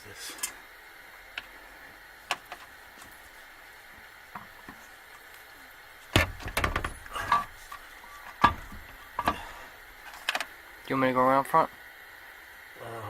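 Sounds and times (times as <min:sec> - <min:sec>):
metal parts and tools knocking: 0:06.2 - 0:09.5.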